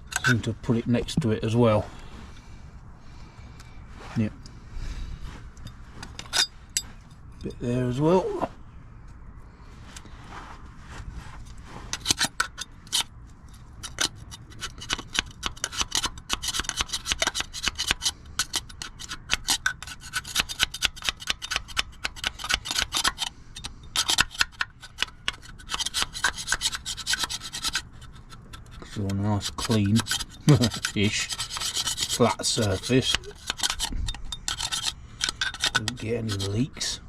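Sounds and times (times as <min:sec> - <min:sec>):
scraper rasping sealant off metal: 0:11.9 - 0:37.0.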